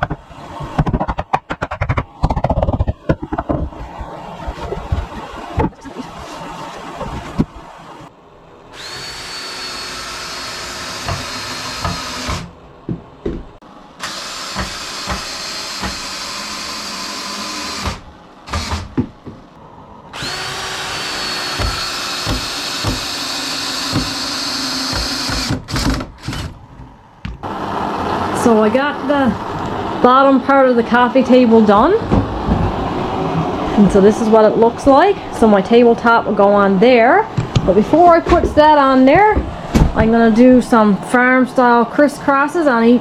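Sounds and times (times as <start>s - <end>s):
wood knocking: 0.0s - 6.0s, 11.1s - 13.6s, 17.8s - 19.5s, 21.6s - 23.2s, 37.4s - 40.2s
power drill whining: 8.7s - 12.5s, 14.0s - 18.8s, 20.1s - 26.6s.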